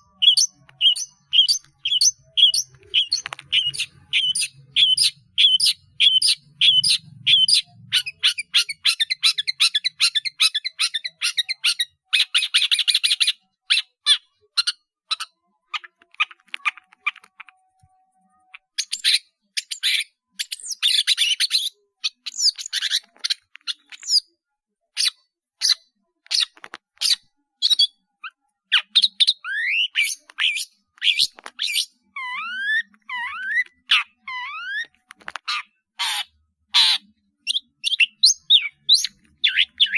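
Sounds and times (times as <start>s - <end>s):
shrike singing varied song: 0.0s - 12.0s, 36.1s - 39.9s.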